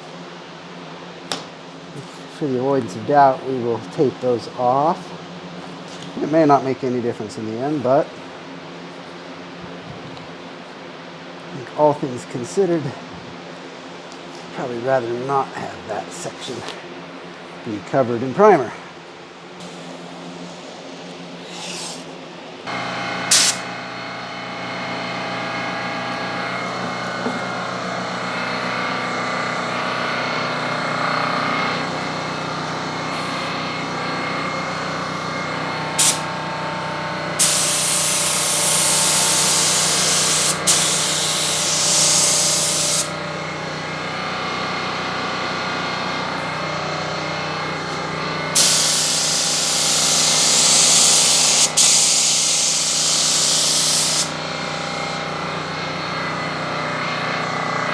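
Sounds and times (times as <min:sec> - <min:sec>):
motor hum: 0:21.4 - 0:57.9
spray gun hissing: 0:22.7 - 0:30.3, 0:36.0 - 0:36.3, 0:37.3 - 0:43.2, 0:48.5 - 0:54.4.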